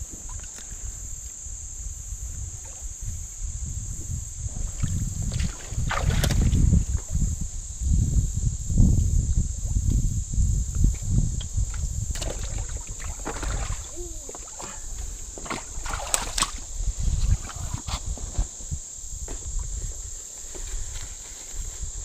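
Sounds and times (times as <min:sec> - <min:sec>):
high insect drone: 0:00.0 - 0:22.0
water sloshing and splashing: 0:04.5 - 0:07.2, 0:11.7 - 0:18.0.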